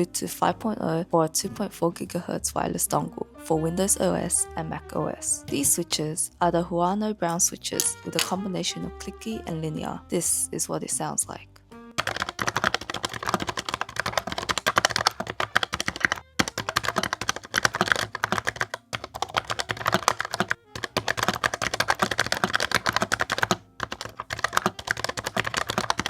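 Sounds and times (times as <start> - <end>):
mechanical keyboard typing: 12.0 - 26.0.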